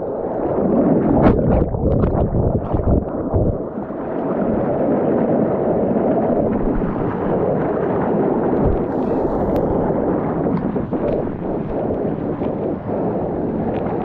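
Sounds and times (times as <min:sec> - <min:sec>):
water rushing over rocks: 0:06.0 - 0:14.0.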